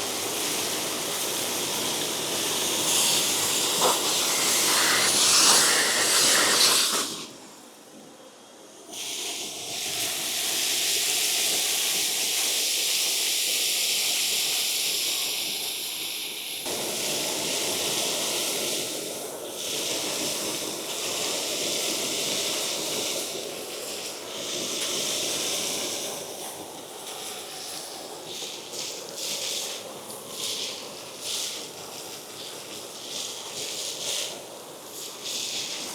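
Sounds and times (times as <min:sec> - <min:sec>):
industrial vacuum rushing air: 0:00.0 - 0:12.3, 0:16.2 - 0:27.0.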